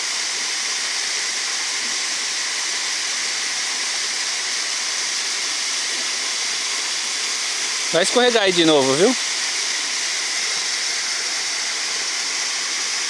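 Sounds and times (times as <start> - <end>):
waterfall rushing: 7.6 - 12.3.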